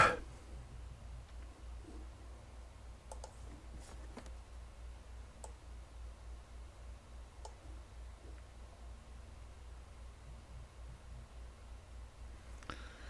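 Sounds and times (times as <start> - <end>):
low steady hum: 0.0 - 13.0
computer mouse clicks: 3.1 - 3.5, 5.4 - 5.6, 7.4 - 7.6.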